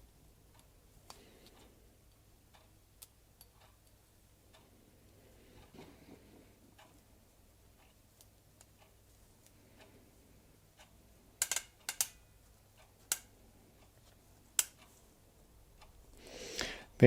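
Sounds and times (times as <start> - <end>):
faint ticks: 0.5 - 12.2
ball bearings clicking: 11.3 - 12.3.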